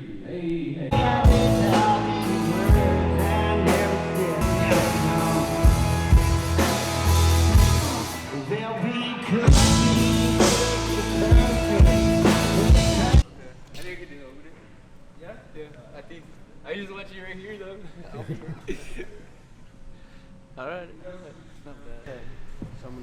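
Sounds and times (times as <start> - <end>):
person singing: 0.9 - 6.7, 8.0 - 13.2
rock music with drums and guitars: 0.9 - 8.5, 9.3 - 13.2.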